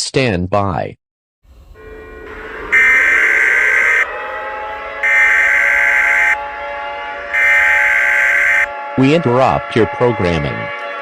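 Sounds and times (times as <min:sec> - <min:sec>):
buzzy screeching data bursts: 0:01.8 - 0:04.1, 0:05.0 - 0:06.4, 0:07.4 - 0:08.7.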